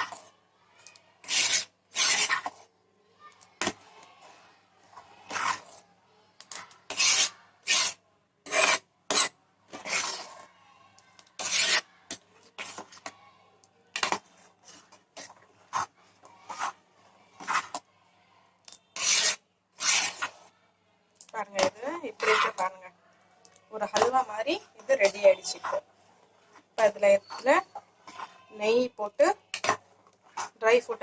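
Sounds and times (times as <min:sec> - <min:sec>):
spoon scraping a pan: 0:01.2 - 0:02.6, 0:03.6 - 0:05.8, 0:06.4 - 0:10.5, 0:11.2 - 0:13.2, 0:14.0 - 0:16.8, 0:17.4 - 0:17.8, 0:18.7 - 0:20.5, 0:21.5 - 0:22.7, 0:23.8 - 0:30.6.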